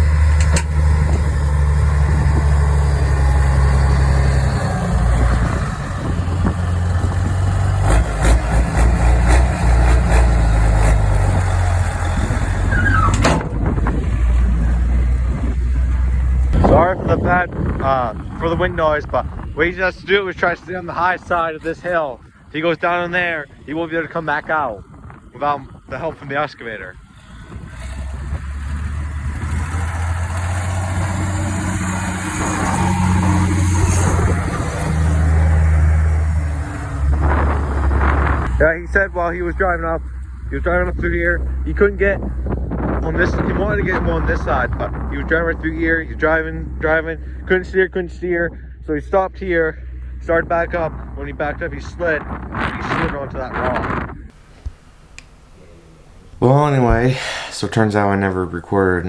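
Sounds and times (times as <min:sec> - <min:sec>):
heavy engine humming: 0:00.0 - 0:16.8, 0:27.0 - 0:43.8, 0:54.2 - 0:59.0
wind buffeting microphone: 0:00.0 - 0:47.5, 0:49.9 - 0:59.0
brief high squeak: 0:12.7 - 0:13.3.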